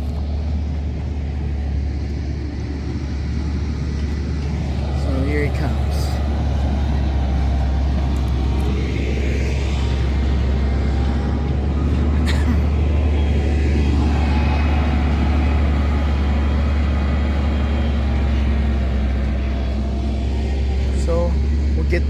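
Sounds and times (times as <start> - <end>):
diesel truck engine running: 0.0 - 22.0.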